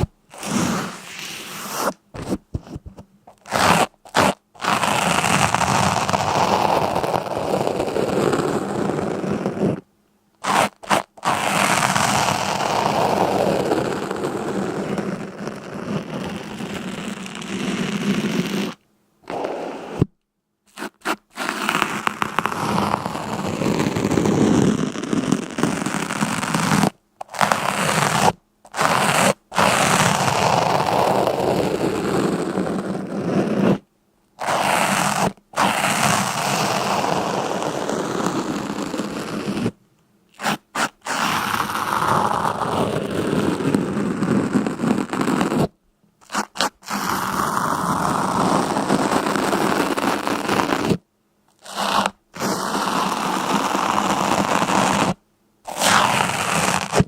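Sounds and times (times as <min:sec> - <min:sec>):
scraping crunching noise: 0:00.0 - 0:09.8, 0:34.4 - 0:57.0.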